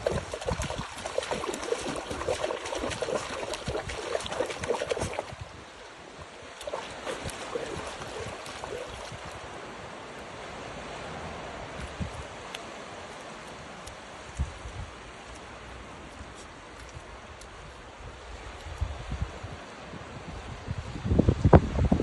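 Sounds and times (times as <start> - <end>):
small waves splashing on beach: 0.0 - 20.7.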